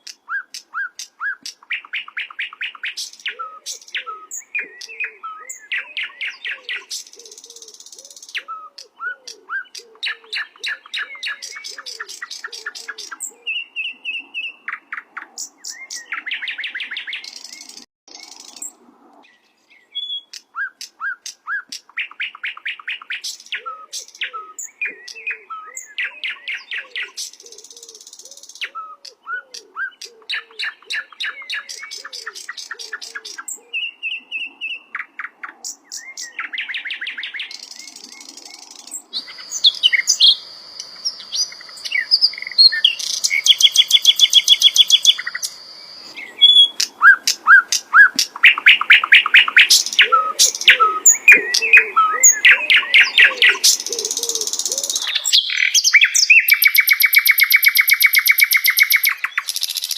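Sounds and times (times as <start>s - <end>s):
bird singing trills and whistles: 0.0s - 18.7s, 19.3s - 59.9s.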